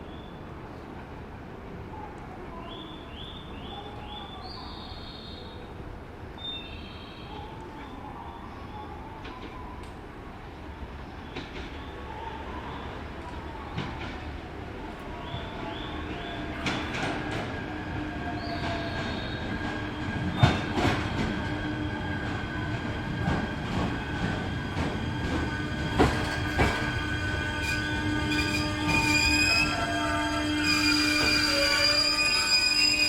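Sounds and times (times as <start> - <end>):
electric train slowing: 14.9 - 33.0
wheels and brakes squealing: 15.2 - 33.0.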